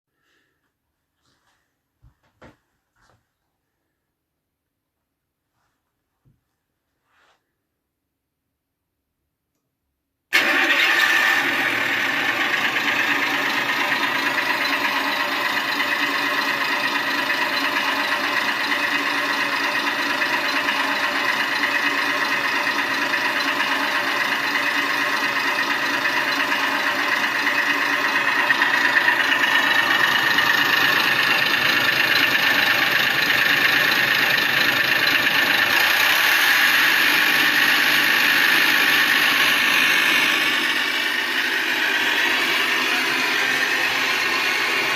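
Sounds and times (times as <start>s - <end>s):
electronic engine idle sound: 10.4s - 44.9s.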